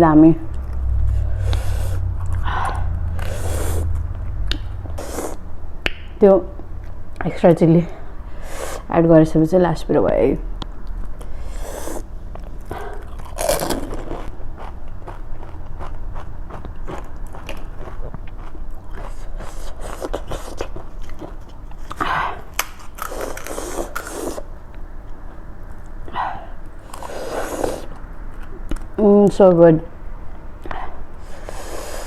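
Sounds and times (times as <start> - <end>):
wet chewing: 10.8 - 24.5, 26.8 - 28.9
crisp food crunching: 12.4 - 24.5.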